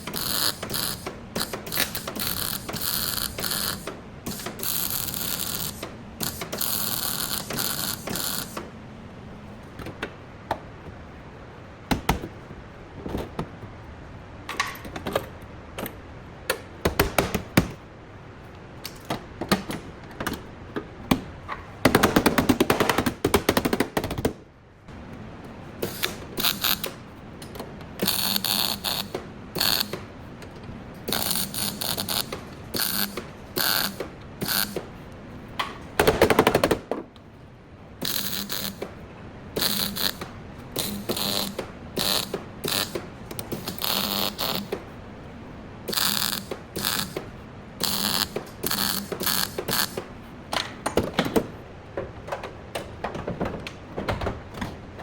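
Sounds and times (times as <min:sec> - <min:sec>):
ratchet wrench clicking: 0:00.0 - 0:08.6, 0:25.8 - 0:27.0, 0:28.0 - 0:30.0, 0:31.1 - 0:34.8, 0:38.0 - 0:38.8, 0:39.6 - 0:44.8, 0:45.9 - 0:47.2, 0:47.8 - 0:50.0.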